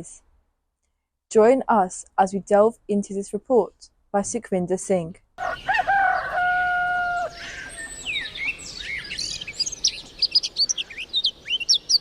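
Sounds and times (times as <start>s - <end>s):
rooster crowing: 5.4s - 8.5s
small birds chirping: 5.4s - 12.0s.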